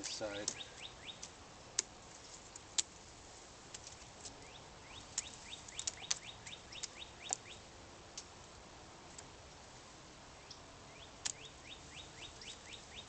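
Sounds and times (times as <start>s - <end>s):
bird chirping: 0.0s - 1.3s, 4.0s - 7.7s, 10.4s - 13.0s.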